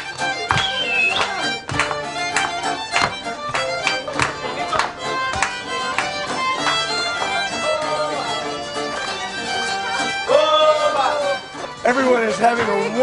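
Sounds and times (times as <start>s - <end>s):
steady beat: 0.0s - 8.8s
violin playing lively melody: 0.0s - 13.0s.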